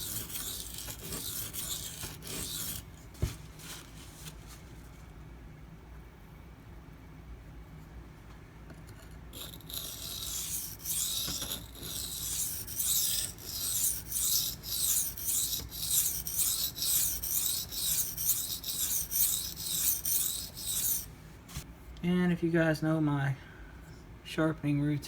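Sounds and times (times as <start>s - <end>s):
knife scraping on sharpening stone: 0.0s - 2.8s, 9.4s - 21.1s.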